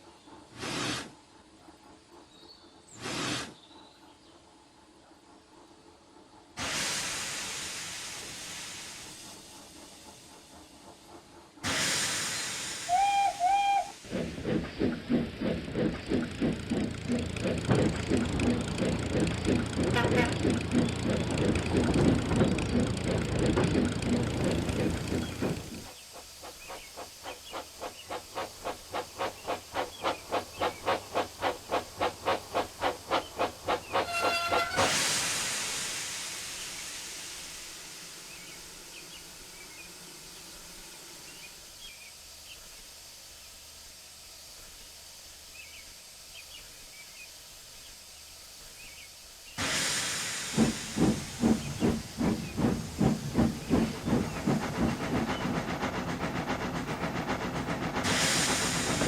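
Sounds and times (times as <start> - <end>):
steam locomotive chuffing: 0.0 - 59.0
steam escaping: 2.9 - 3.5, 6.5 - 59.0
train whistle blast: 12.8 - 14.0, 34.0 - 35.2.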